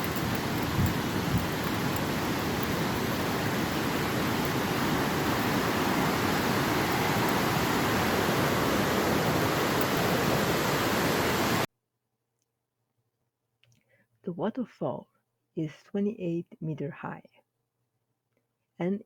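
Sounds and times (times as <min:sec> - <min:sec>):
waterfall rushing: 0:00.0 - 0:11.7.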